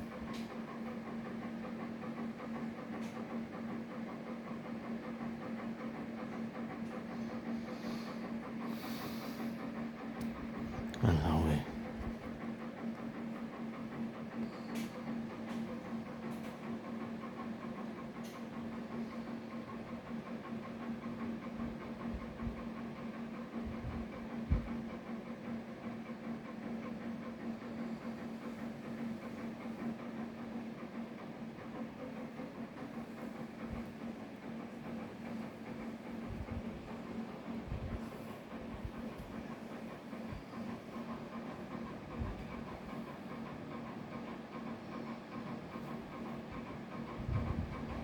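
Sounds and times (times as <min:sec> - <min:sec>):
low pulsing mechanical hum: 0:00.0 - 0:48.0
electrical hum: 0:10.2 - 0:12.4.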